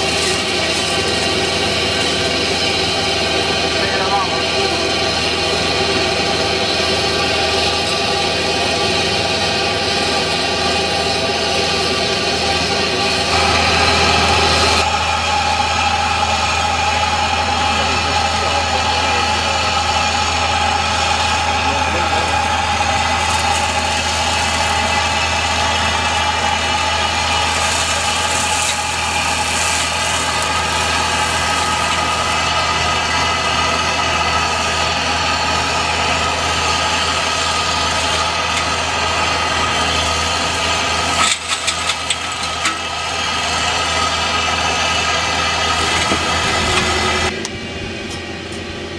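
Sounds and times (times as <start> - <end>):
diesel engine running: 0.0 - 48.9.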